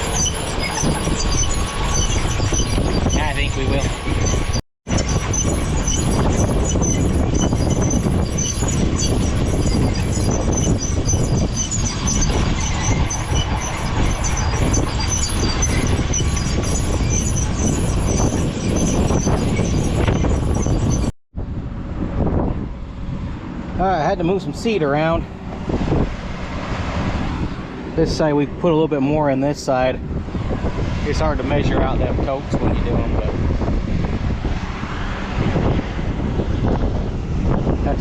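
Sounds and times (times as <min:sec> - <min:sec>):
metallic squeaking and ticking: 0:00.0 - 0:21.1
tractor engine rumble: 0:00.0 - 0:38.0.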